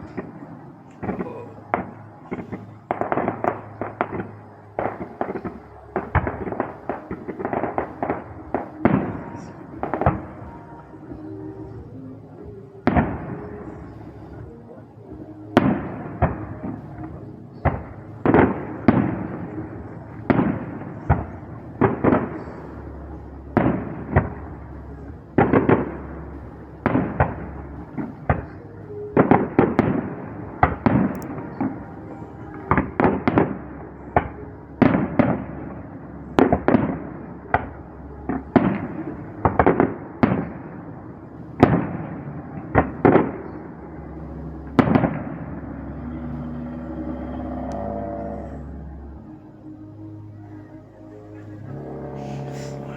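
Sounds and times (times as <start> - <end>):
fireworks bangs with echo: 0.0 - 14.6, 15.2 - 43.6, 44.7 - 45.8.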